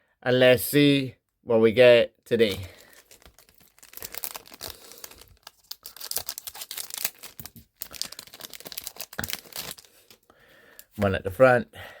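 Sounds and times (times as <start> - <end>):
foil wrapper crinkling and tearing: 2.4 - 10.3.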